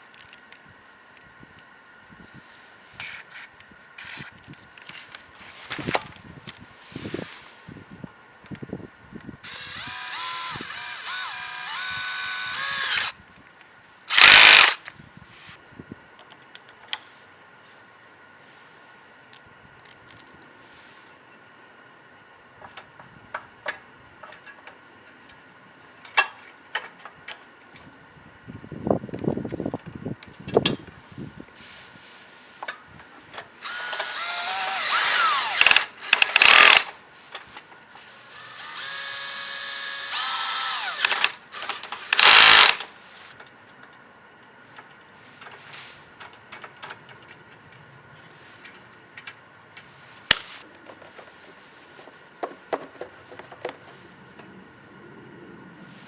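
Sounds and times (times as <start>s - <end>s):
small power tool motor whining: 9.4s - 13.2s, 14.1s - 14.8s, 33.6s - 36.9s, 38.0s - 42.9s.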